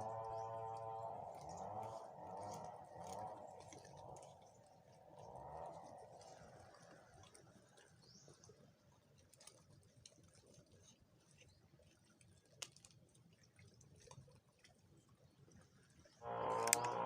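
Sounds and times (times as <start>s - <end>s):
faint clicks and crackles: 15.5s - 17.0s.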